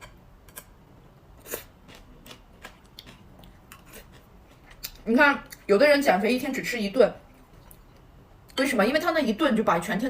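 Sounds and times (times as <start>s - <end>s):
person chewing food: 1.4s - 5.7s.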